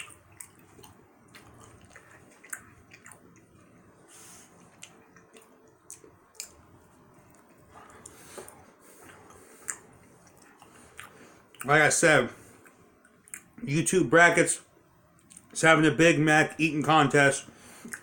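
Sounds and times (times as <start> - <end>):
person chewing gummy candy: 0.0 - 3.9, 4.6 - 11.7
mouth smacks and clicks: 4.7 - 6.6, 7.3 - 11.7, 12.6 - 13.6, 17.8 - 18.0.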